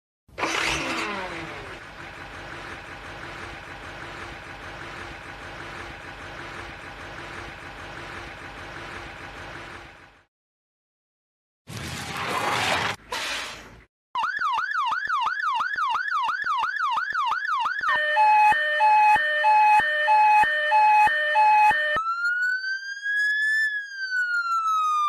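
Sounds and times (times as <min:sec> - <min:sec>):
car engine revving and idling: 0:00.4 - 0:10.3.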